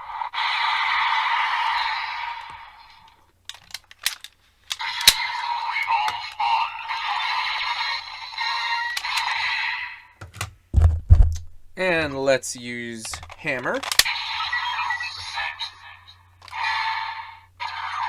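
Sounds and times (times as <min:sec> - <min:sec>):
sharp plastic clicks: 0:03.4 - 0:06.4, 0:08.9 - 0:09.4, 0:10.2 - 0:12.2, 0:13.0 - 0:14.2
toy belt music and announcer voice: 0:11.8 - 0:16.0.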